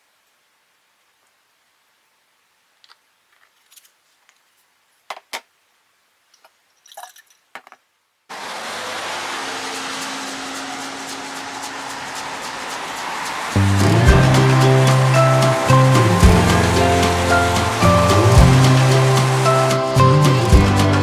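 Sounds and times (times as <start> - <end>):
small clicks of objects moved: 2.8 - 5.5, 6.3 - 7.9
background music: 12.4 - 21.0.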